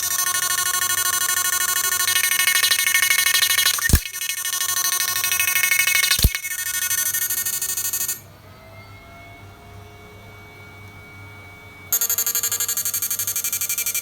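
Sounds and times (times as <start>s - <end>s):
high pulsing electric buzz: 0.0s - 8.2s.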